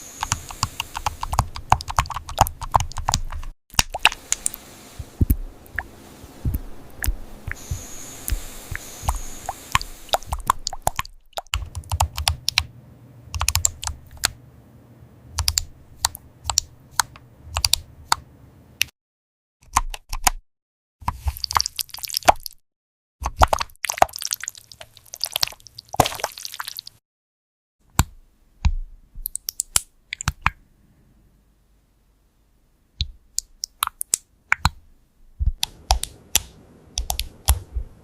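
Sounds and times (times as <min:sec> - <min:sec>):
typing on a computer keyboard: 0:00.2 - 0:03.5, 0:11.6 - 0:12.7, 0:13.4 - 0:14.4, 0:15.4 - 0:17.9.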